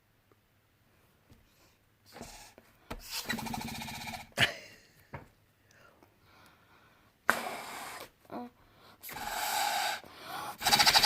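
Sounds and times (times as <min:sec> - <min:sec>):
hissing blows through a straw: 0:07.3 - 0:08.2, 0:09.0 - 0:10.0.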